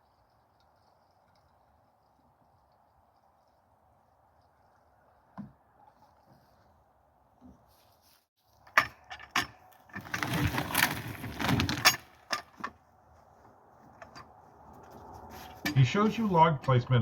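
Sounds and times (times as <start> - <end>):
clattering and rustling: 7.4 - 15.9.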